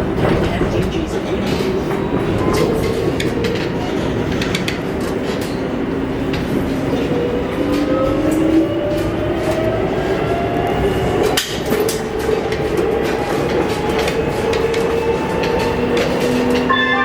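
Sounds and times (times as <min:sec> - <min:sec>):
tram motors whining: 0:00.0 - 0:17.0
wheels clicking over rail joints: 0:10.8 - 0:16.7.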